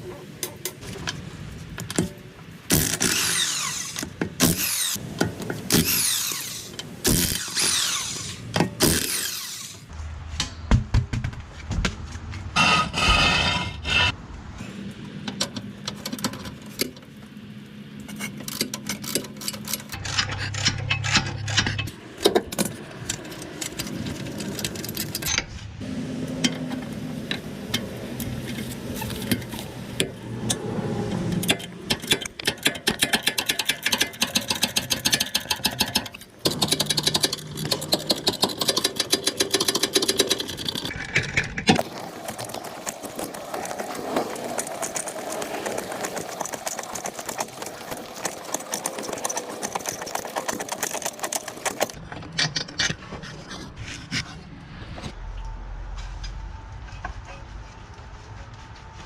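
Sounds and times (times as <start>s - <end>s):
tools and metal parts clinking: 18.0s - 25.6s, 31.4s - 41.9s.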